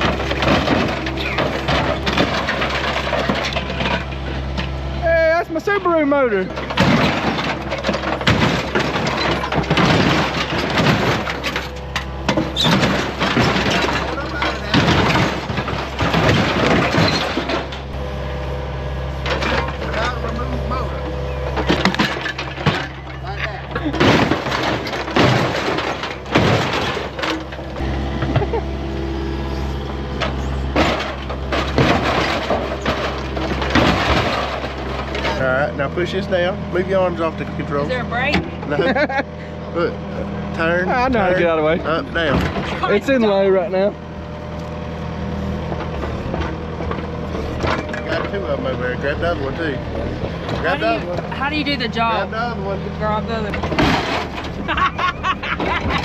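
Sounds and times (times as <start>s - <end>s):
glass breaking: 0.0s - 4.2s, 6.5s - 18.0s, 21.6s - 27.6s, 30.3s - 35.5s, 53.5s - 56.0s
metal crunching and cracking: 0.0s - 18.1s, 19.1s - 39.1s, 39.8s - 52.8s, 53.4s - 56.0s
excavator engine hum: 0.0s - 56.0s.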